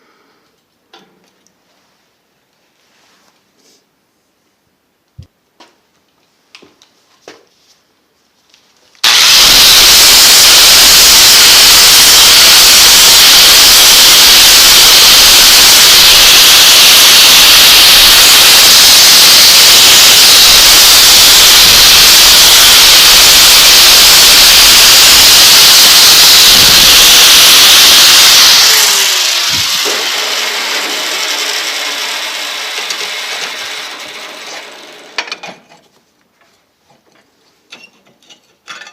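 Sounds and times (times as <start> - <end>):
electric grinder grinding: 9.0 - 35.0.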